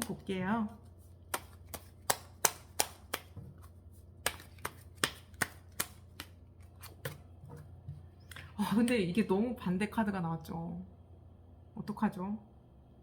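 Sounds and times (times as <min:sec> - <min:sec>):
cards being shuffled by hand: 0:00.0 - 0:08.5.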